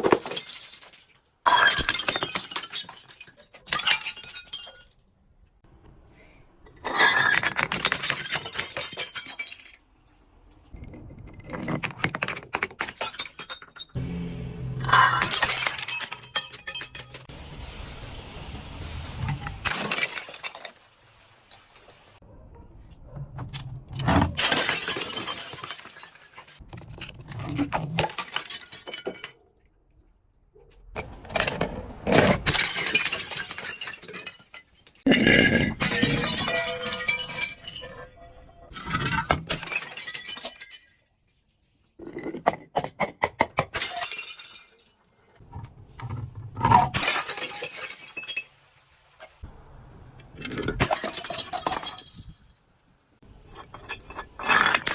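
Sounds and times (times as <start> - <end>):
glass bottles breaking: 0.0 - 5.2, 6.8 - 9.9, 12.0 - 14.0, 14.8 - 17.3, 19.3 - 20.9, 24.3 - 29.5, 31.1 - 41.2, 43.6 - 45.2, 46.6 - 48.6, 50.4 - 52.6, 53.4 - 54.9.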